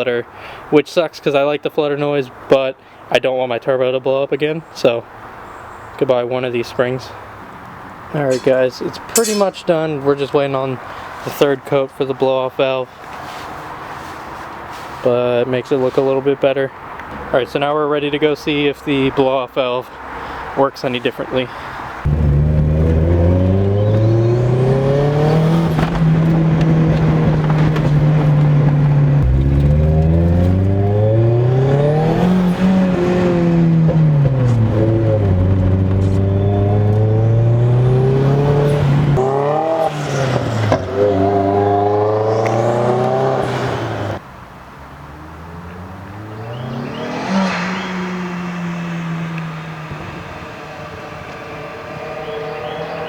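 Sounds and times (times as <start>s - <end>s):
turbocharged car engine under load: 22.0s - 44.2s, 44.9s - 53.0s.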